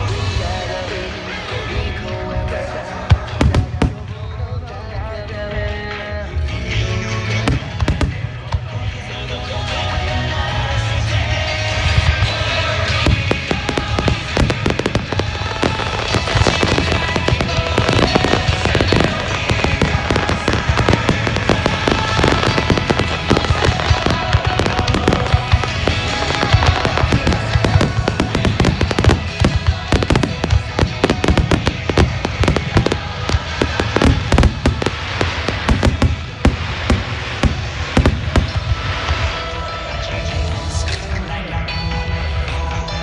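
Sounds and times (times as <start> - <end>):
music over loudspeakers: 0.0 - 43.0
fireworks bangs: 3.1 - 4.8, 7.4 - 8.9, 11.8 - 39.7.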